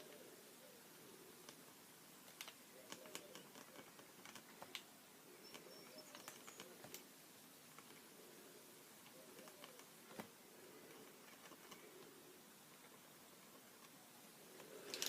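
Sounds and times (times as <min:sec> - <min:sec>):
faint high chirps: 0:05.3 - 0:06.8.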